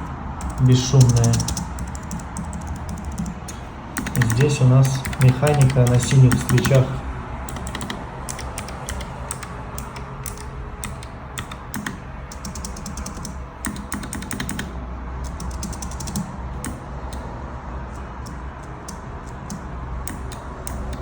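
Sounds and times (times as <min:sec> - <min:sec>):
mechanical keyboard key clicks: 0:00.4 - 0:06.8, 0:07.5 - 0:14.7, 0:18.2 - 0:21.0.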